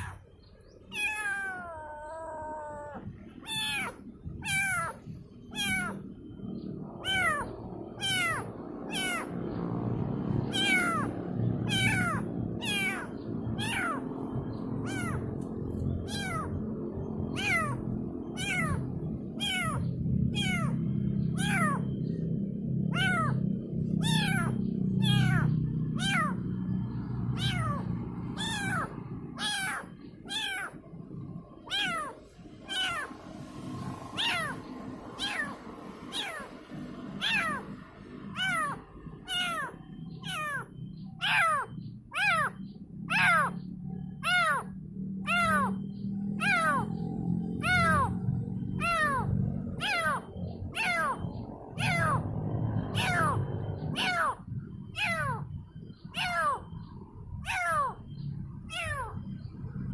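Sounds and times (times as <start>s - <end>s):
kitten meowing: 0.0s - 0.3s, 0.9s - 6.2s, 6.9s - 9.3s, 10.5s - 14.1s, 14.8s - 16.6s, 17.3s - 22.1s, 22.9s - 26.4s, 27.3s - 30.8s, 31.6s - 33.2s, 34.1s - 43.6s, 44.2s - 45.8s, 46.4s - 46.8s, 47.6s - 48.2s, 48.8s - 52.2s, 53.0s - 55.5s, 56.1s - 56.7s, 57.4s - 58.1s, 58.7s - 59.2s
low steady rumble: 0.0s - 59.9s.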